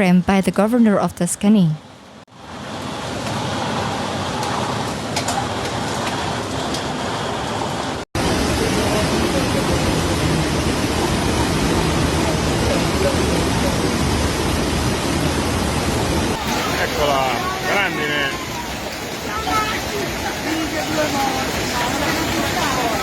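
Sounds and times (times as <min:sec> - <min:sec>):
heavy rain: 0:02.3 - 0:23.0
running water: 0:08.2 - 0:23.0.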